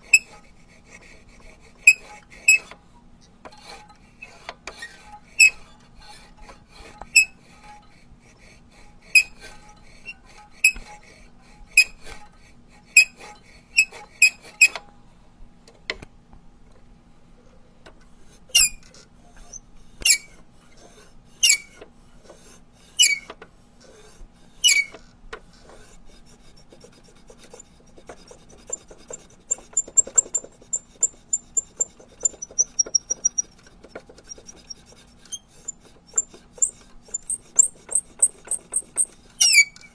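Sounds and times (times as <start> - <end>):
rubber duck squeaking: 29.5 - 33.6, 36.2 - 39.8.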